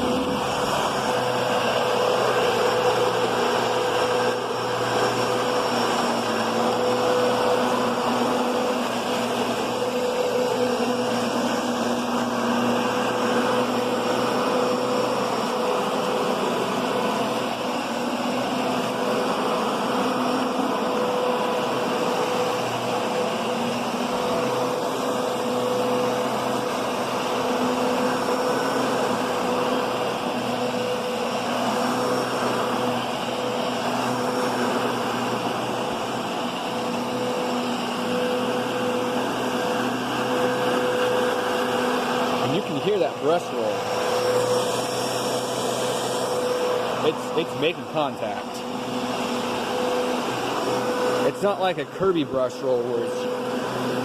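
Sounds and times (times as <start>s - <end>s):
vacuum cleaner running on carpet: 0.0s - 54.0s.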